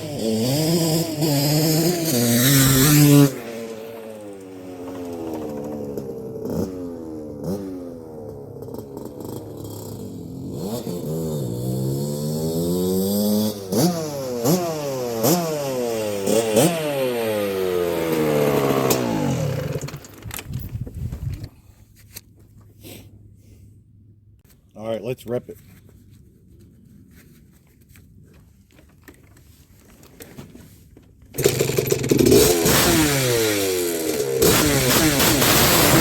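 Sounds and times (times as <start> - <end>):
motorcycle engine revving through gears: 0.0 - 21.5, 31.3 - 36.0.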